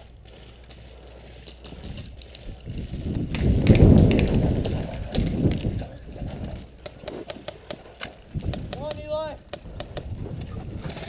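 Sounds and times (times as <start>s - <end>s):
equipment rattling: 0.0s - 8.6s
quick footsteps: 0.0s - 11.0s.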